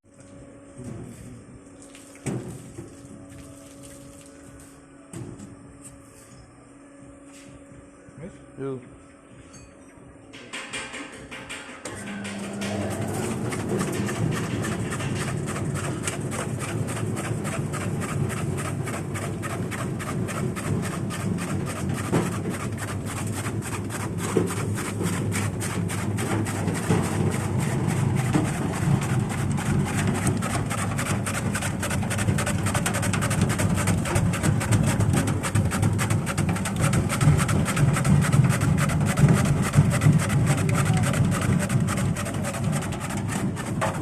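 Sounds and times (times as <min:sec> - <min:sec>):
slicing machine clattering: 0:10.6 - 0:44.0
low motor hum: 0:11.1 - 0:44.0.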